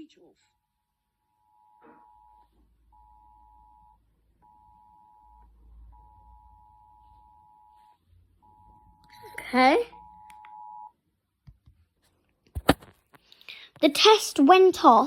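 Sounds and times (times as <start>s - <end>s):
faint electronic beep tone: 1.3s - 11.0s.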